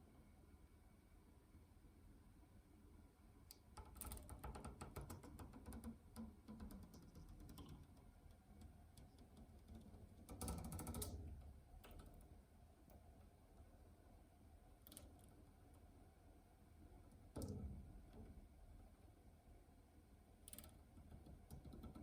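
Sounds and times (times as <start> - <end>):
faint clicking and rattling: 3.4 - 19.2, 20.3 - 22.0.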